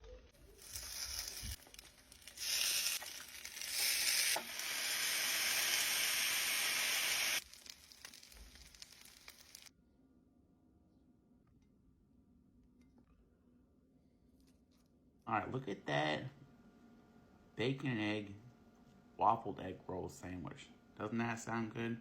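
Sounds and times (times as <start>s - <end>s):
food sizzling: 0.0s - 9.7s.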